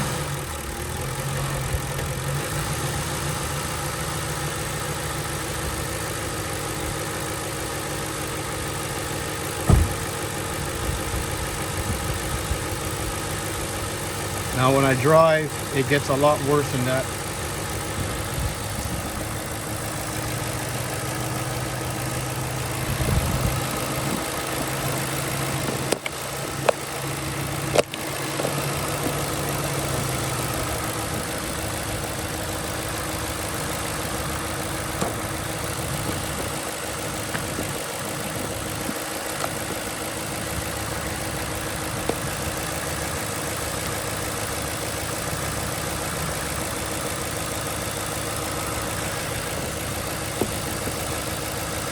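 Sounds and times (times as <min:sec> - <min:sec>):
car engine droning: 0:00.0 - 0:51.9
sharp knocks: 0:09.6 - 0:10.0.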